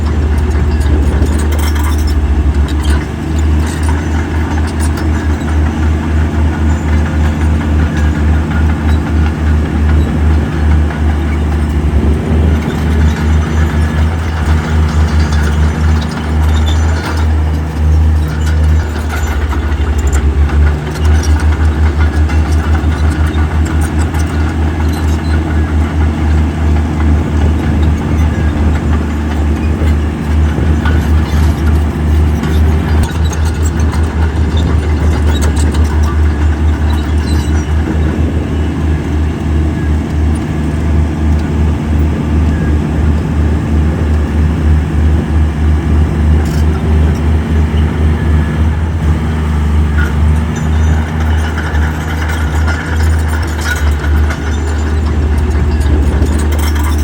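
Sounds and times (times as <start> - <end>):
diesel engine throbbing: 0.0 - 57.0.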